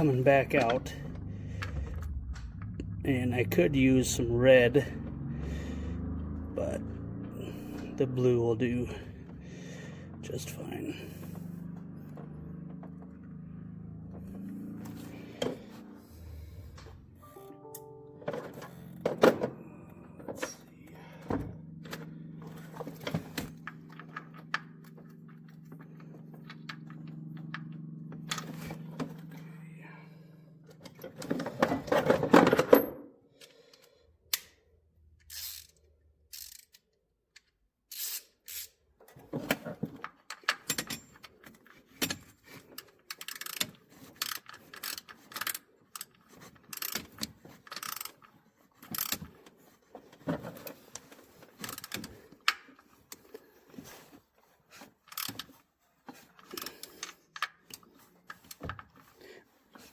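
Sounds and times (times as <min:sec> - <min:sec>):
steady low hum: 0:00.0 - 0:31.6.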